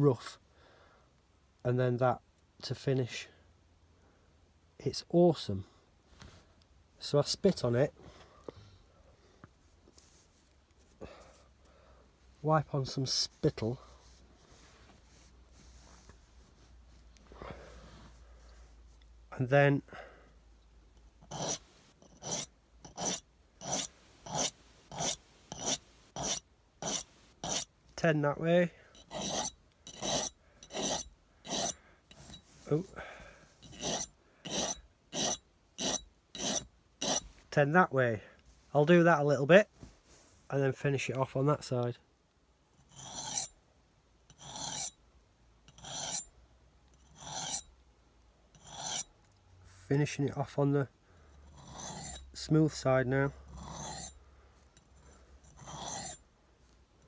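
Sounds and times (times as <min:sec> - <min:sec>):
knife rasping on sharpening stone: 0:21.2 - 0:27.7, 0:28.9 - 0:32.7, 0:33.6 - 0:37.3, 0:42.8 - 0:43.5, 0:44.3 - 0:45.0, 0:45.7 - 0:46.3, 0:47.0 - 0:47.7, 0:48.6 - 0:49.1, 0:51.5 - 0:52.3, 0:53.5 - 0:54.2, 0:54.8 - 0:56.2.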